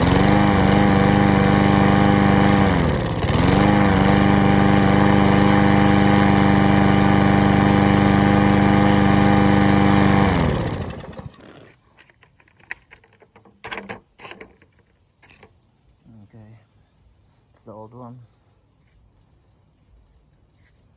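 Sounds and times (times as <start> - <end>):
lawn mower engine running: 0.0 - 11.6
faint clicks and knocks: 11.9 - 20.9.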